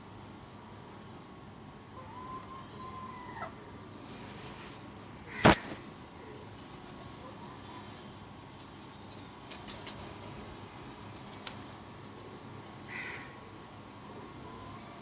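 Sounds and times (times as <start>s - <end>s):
short scratchy sound: 5.4s - 5.8s.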